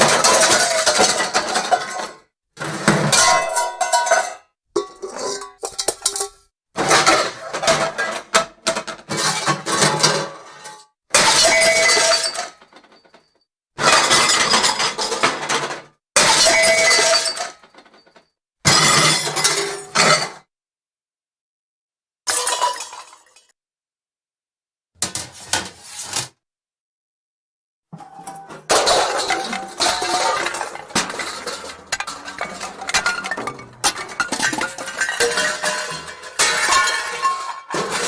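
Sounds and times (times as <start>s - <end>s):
pots and pans clattering: 0.0s - 13.2s, 13.8s - 20.4s, 28.0s - 38.0s.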